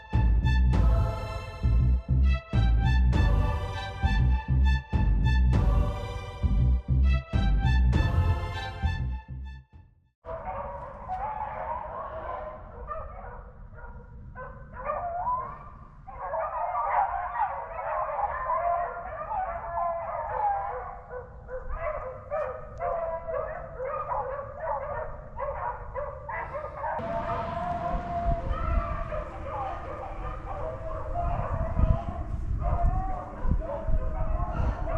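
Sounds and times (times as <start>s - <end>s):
beagles baying and yelping: 10.3s - 34.9s.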